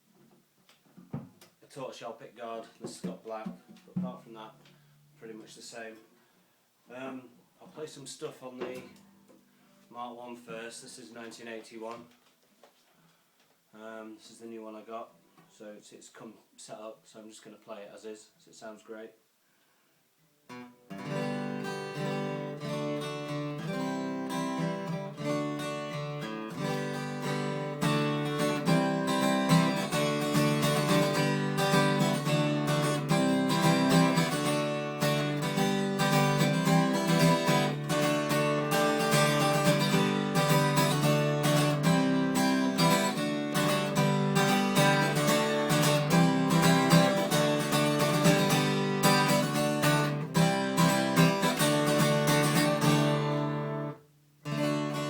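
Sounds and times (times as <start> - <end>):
acoustic guitar strummed chords: 20.5 - 55.0.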